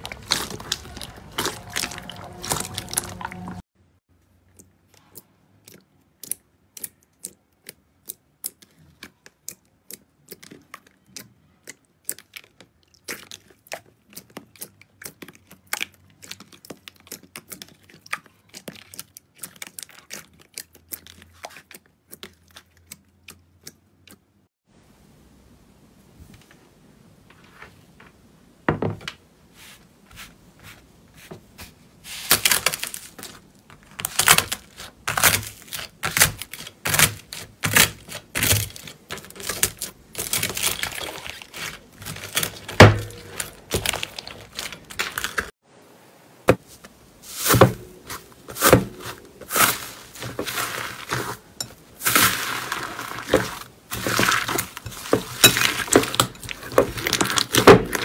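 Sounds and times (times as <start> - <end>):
slime popping and crackling: 0.0 - 3.6, 32.3 - 45.5.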